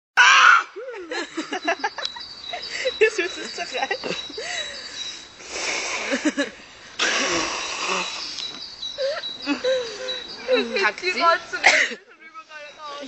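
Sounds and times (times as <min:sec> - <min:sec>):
crickets chirping: 0:00.8 - 0:13.0
person sneezing: 0:07.0 - 0:07.6.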